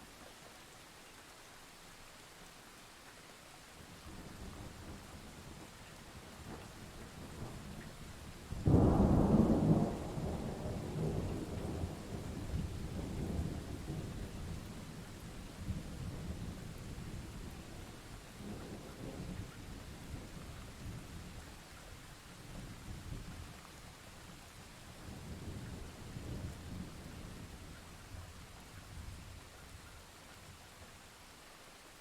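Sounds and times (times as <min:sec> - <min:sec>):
steady rain: 0:00.0 - 0:32.0
faint roll of thunder: 0:04.1 - 0:21.5
thunderclap rolling into rumble: 0:08.6 - 0:14.3.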